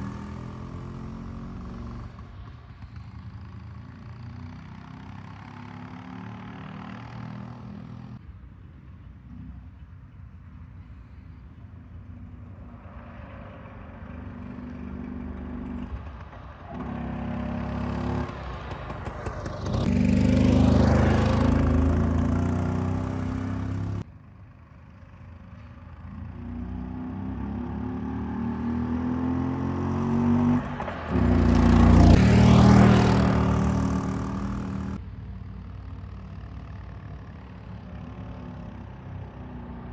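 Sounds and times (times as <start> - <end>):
scooter engine revving: 16.8 - 24.0, 28.1 - 35.0.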